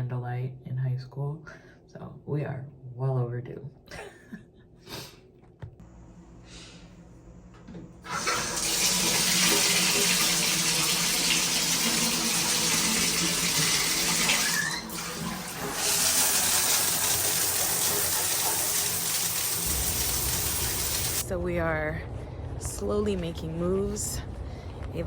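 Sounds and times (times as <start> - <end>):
water running from a tap: 8.0 - 21.2.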